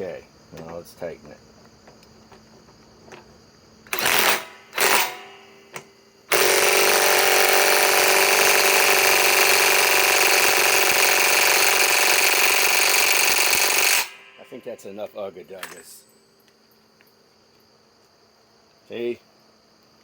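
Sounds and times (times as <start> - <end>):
impact wrench hammering on nut: 3.9 - 14.6.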